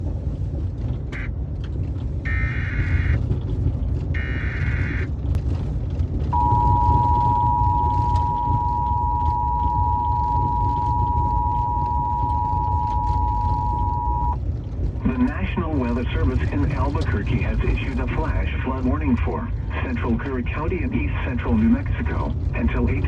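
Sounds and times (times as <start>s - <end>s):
low background rumble: 0.0s - 23.0s
two-tone attention signal: 6.4s - 14.4s.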